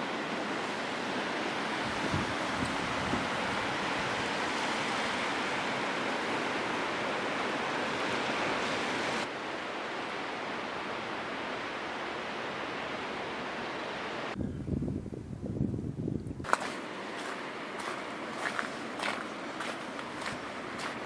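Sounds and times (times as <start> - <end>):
ocean surf rushing: 0.0 - 14.4.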